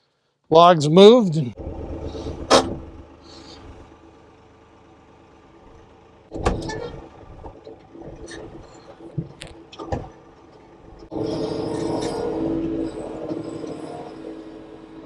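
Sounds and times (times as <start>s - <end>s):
tractor engine running: 1.5s - 15.0s
loud metal clank: 2.4s - 3.0s.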